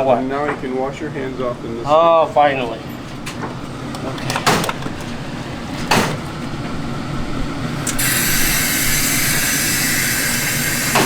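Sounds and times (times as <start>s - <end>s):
low machine hum: 0.0s - 11.0s
tap water running: 2.4s - 11.0s.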